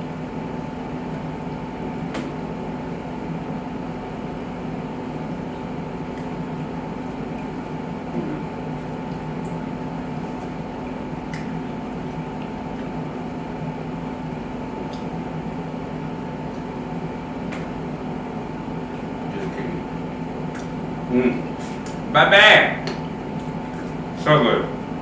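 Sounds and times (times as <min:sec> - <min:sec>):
appliance electrical hum: 0:00.0 - 0:25.0
person eating: 0:08.1 - 0:08.7, 0:20.5 - 0:22.1.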